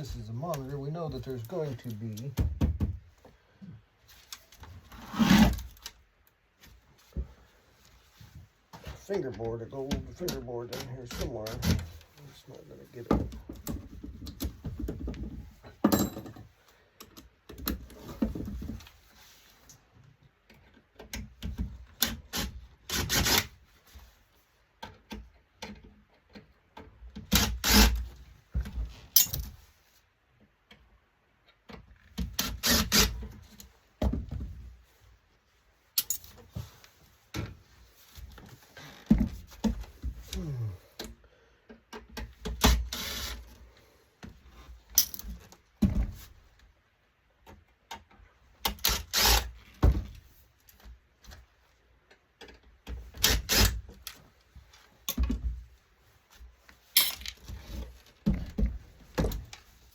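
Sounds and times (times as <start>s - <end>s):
metal parts and tools clattering: 15.6s - 16.6s, 29.1s - 29.6s, 36.0s - 36.5s, 44.9s - 45.4s, 56.9s - 57.7s.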